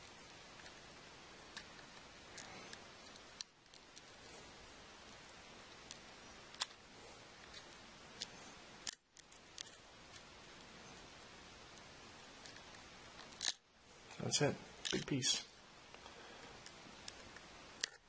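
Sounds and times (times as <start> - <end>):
steady hiss: 0.0 - 18.0.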